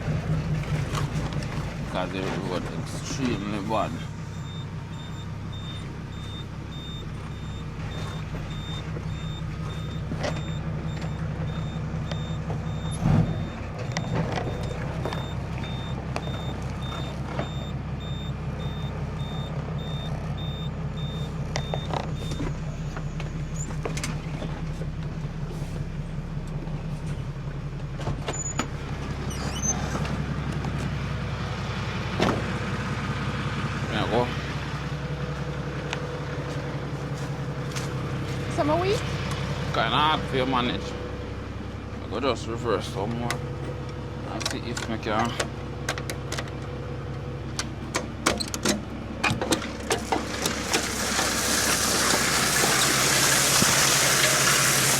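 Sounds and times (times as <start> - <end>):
truck engine running: 0.0 - 54.9
reversing alarm beeping: 3.0 - 23.7.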